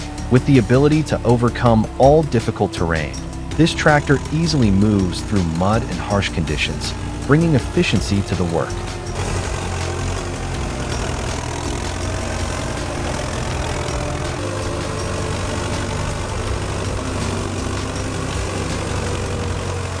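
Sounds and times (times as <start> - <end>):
tractor diesel engine running: 0.0 - 20.0.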